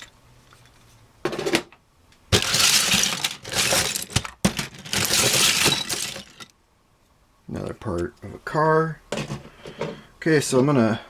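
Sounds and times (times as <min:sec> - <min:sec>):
plastic pieces clattering in box: 0:02.3 - 0:06.5.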